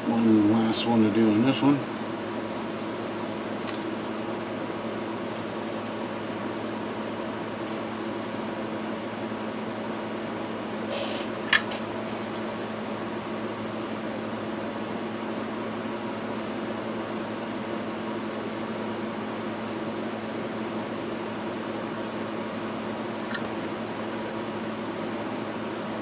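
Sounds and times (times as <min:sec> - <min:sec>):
fan hum: 0:00.0 - 0:26.0
short hiss: 0:10.9 - 0:11.4.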